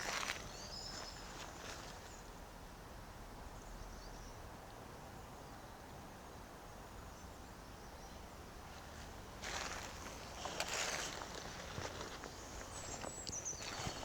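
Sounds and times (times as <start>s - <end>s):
soft rustles: 8.7s - 14.0s.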